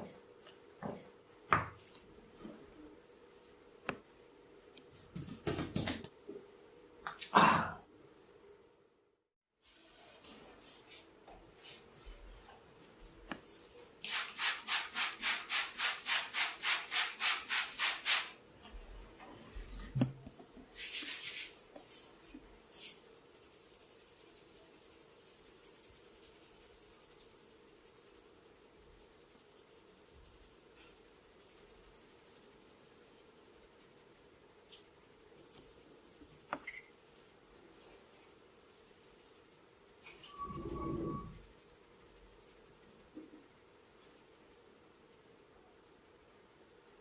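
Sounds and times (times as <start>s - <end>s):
rubbing strokes over hair: 9.8s - 18.4s, 20.7s - 47.0s.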